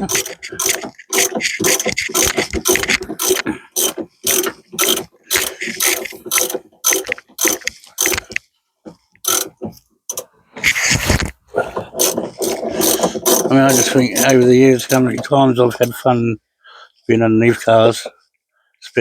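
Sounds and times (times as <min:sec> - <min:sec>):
socket wrench ratchet clicking: 0:00.1 - 0:08.4, 0:09.2 - 0:09.5.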